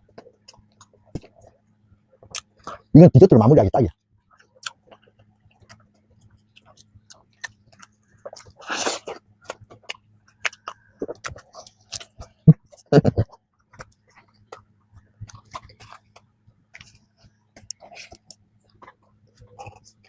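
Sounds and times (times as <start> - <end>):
chewing: 0.0 - 2.9, 4.3 - 20.0
pastry crunching when bitten: 6.6 - 12.5.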